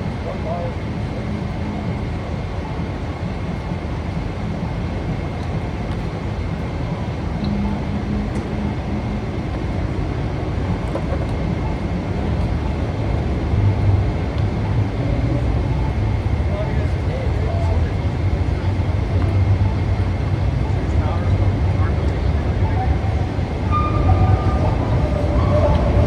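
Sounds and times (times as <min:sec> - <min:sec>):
heavy engines and traffic rumble: 0:00.0 - 0:26.0
thin high whine: 0:18.6 - 0:26.0.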